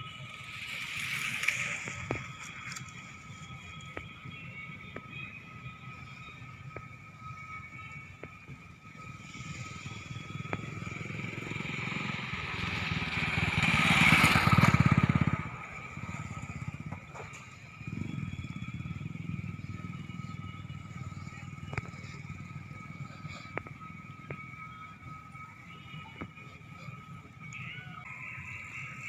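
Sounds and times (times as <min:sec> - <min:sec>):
faint engine running: 0:08.9 - 0:29.0
motorcycle passing close by: 0:10.1 - 0:17.0.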